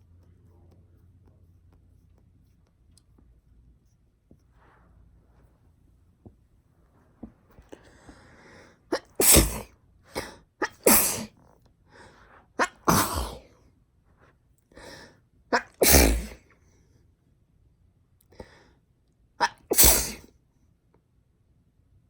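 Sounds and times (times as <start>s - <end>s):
faint breathing: 7.6s - 8.9s, 14.7s - 15.2s, 18.3s - 18.8s
girl sneezing: 8.9s - 11.4s, 12.6s - 13.4s, 15.5s - 16.4s, 19.4s - 20.3s.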